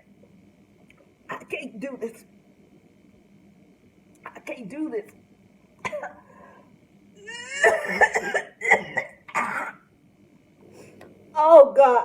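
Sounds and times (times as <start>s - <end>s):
woman coughing: 5.8s - 6.3s, 7.3s - 9.9s
woman retching: 5.8s - 6.3s, 7.2s - 9.9s.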